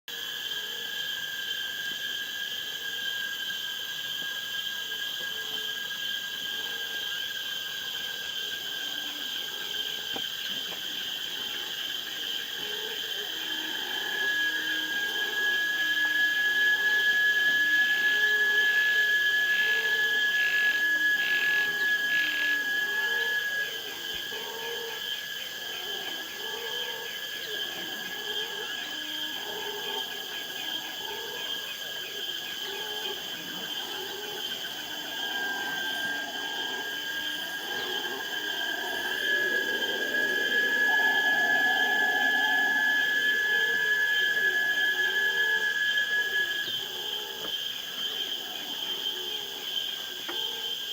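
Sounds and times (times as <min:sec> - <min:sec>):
insects droning: 0:00.1 - 0:50.9
shrill insect whine: 0:00.1 - 0:50.9
short lower calls: 0:34.6 - 0:47.4.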